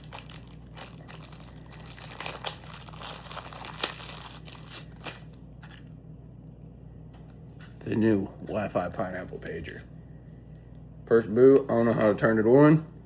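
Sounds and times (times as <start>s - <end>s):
packaging crinkling and rustling: 0.0s - 5.9s.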